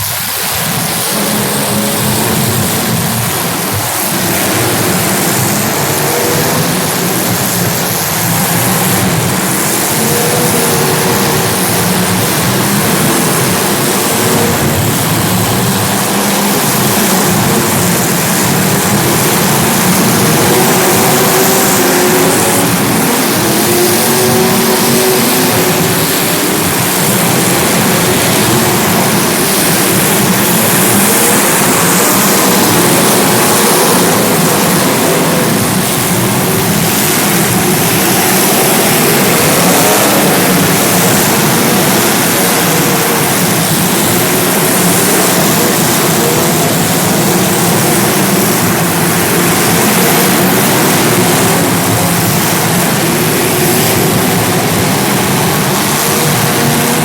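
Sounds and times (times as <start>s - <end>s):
small race car engines: 0.0s - 57.0s.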